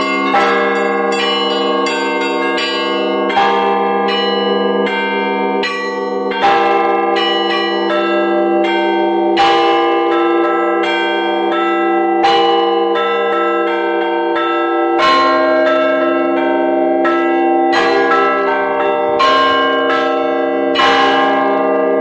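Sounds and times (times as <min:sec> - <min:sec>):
small bells struck rapidly: 0:00.0 - 0:06.6
heavy low bell stroke: 0:00.0 - 0:22.0
large bells ringing hum: 0:00.0 - 0:22.0.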